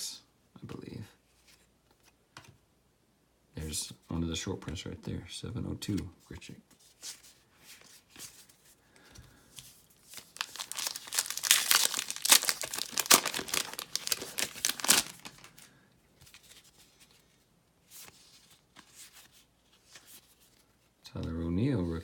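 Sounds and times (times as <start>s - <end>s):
wrapper tearing and crinkling: 10.0s - 15.7s.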